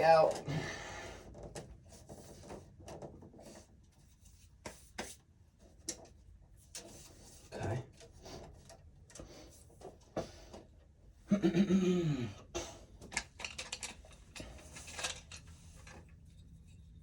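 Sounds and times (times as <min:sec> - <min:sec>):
clicks and scrapes of wiring: 0:13.0 - 0:17.0.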